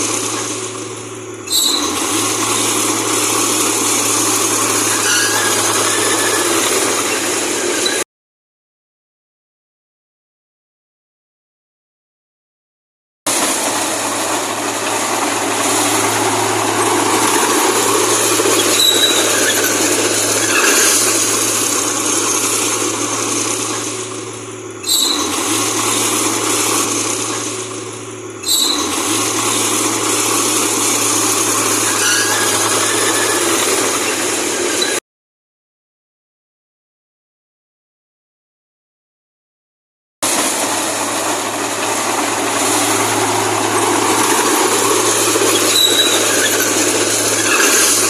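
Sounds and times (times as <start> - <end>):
bulldozer engine running: 0.0 - 8.0, 13.3 - 35.0, 40.2 - 48.0.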